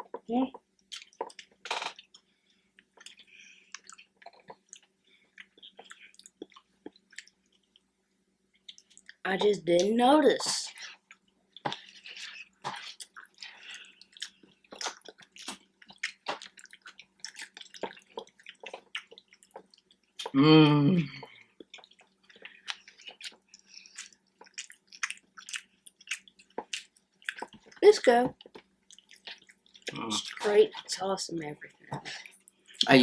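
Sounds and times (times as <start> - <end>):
wet chewing and lip-smacking: 0.1 - 7.9, 8.5 - 9.2, 10.7 - 20.4, 21.2 - 31.0
short hummed voice: 20.4 - 21.2.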